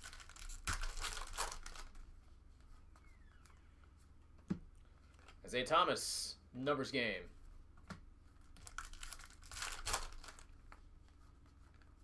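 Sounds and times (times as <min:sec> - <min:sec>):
wrapper crinkling and tearing: 0:00.0 - 0:02.0, 0:08.6 - 0:10.6.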